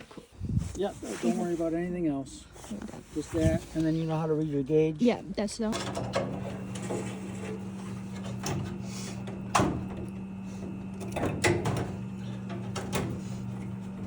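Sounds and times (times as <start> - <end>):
steady low hum: 0.2 - 14.0
hardware clicks and knocks: 5.7 - 6.9.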